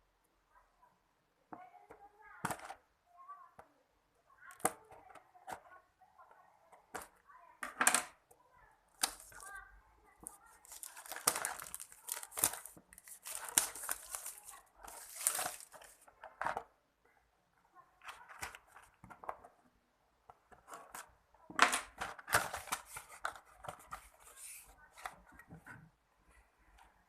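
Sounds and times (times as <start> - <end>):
packaging rustling and tearing: 10.2 - 16.1.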